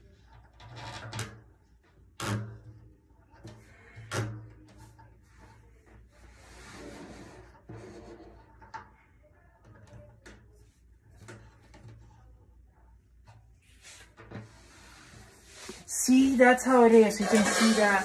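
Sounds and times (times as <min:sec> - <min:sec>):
rustling scrape: 0:13.7 - 0:18.0.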